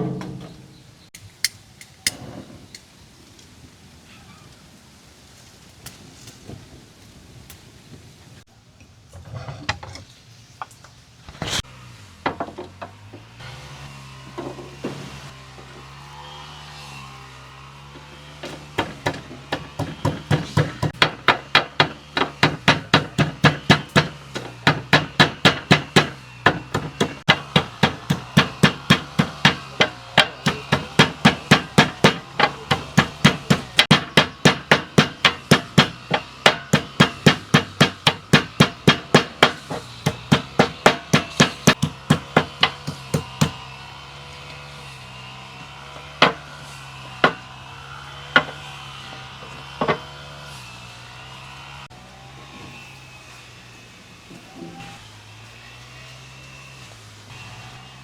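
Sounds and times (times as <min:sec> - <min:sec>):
knife chopping on wooden board: 0:18.4 - 0:43.6.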